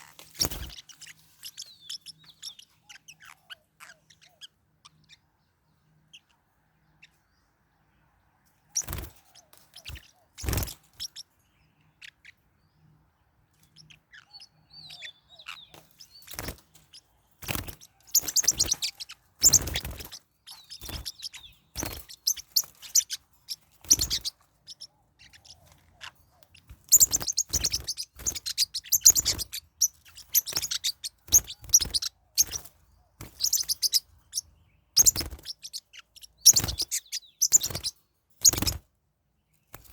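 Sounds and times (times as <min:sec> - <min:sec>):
parrotlets chirping and squawking: 0:00.0 - 0:05.3, 0:08.7 - 0:38.9.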